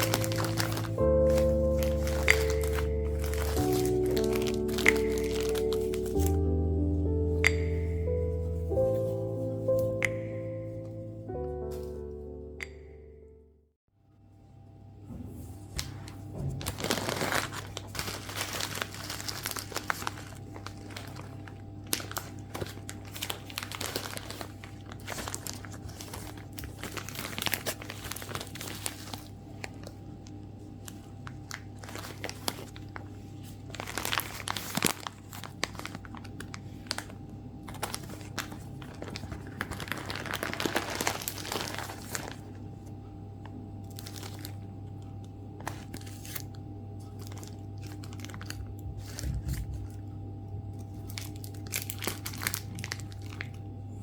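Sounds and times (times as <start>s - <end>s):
crinkling and rustling: 0.0s - 6.5s, 15.5s - 50.2s, 50.8s - 53.7s.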